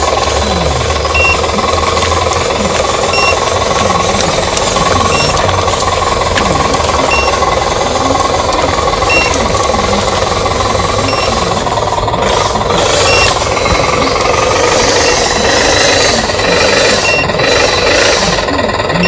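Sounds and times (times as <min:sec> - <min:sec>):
model truck engine drone: 0:00.0 - 0:19.0
faint high beeps: 0:01.0 - 0:01.6, 0:03.1 - 0:03.5, 0:05.0 - 0:05.4, 0:06.9 - 0:07.4, 0:09.0 - 0:09.4, 0:11.0 - 0:11.4, 0:13.0 - 0:15.5.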